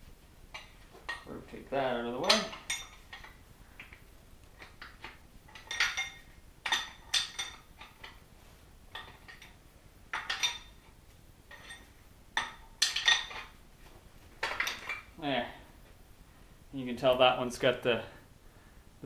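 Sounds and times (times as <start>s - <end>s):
metal bearing parts clinking: 0.5s - 4.0s, 4.6s - 8.2s, 8.9s - 10.9s, 11.5s - 13.6s, 14.4s - 15.2s.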